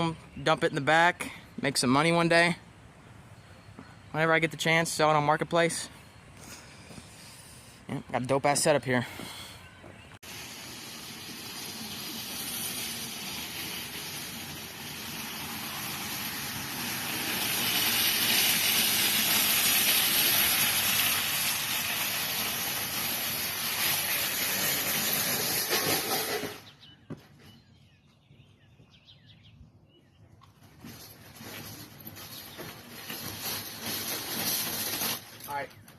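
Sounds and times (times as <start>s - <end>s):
rushing hiss of rolling cart: 10.2s - 26.7s, 32.8s - 35.3s.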